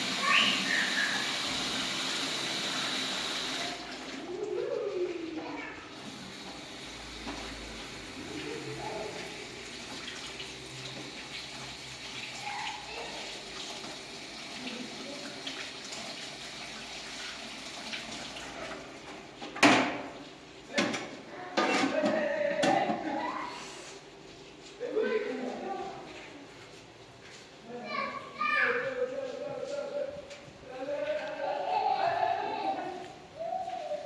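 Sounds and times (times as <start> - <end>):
water running and splashing: 0.0 - 19.4
faint voices: 27.7 - 34.0.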